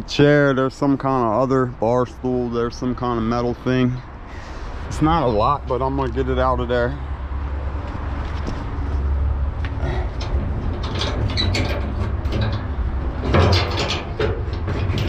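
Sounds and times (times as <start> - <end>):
steady low rumble: 0.0 - 15.0
metal scrap clattering and scraping: 9.7 - 15.0.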